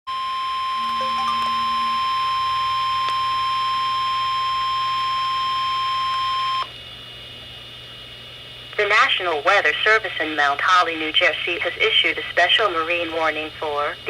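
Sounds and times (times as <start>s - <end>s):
high-pitched warning alarm tone: 0.8s - 6.6s.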